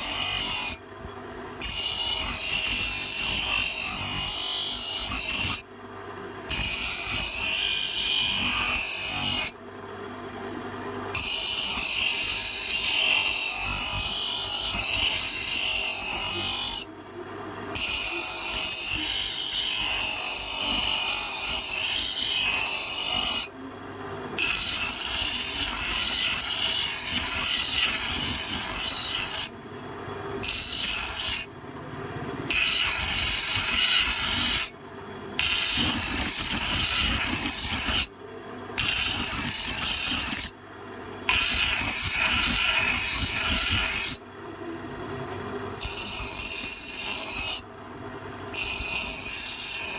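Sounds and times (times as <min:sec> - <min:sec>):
metal grinding hiss: 0:24.4 - 0:29.5, 0:32.5 - 0:34.7, 0:35.4 - 0:38.1, 0:41.3 - 0:44.2.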